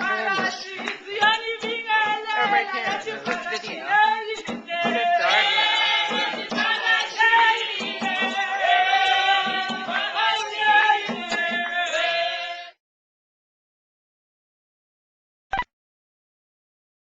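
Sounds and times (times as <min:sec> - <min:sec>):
group of voices singing: 0:00.0 - 0:12.8.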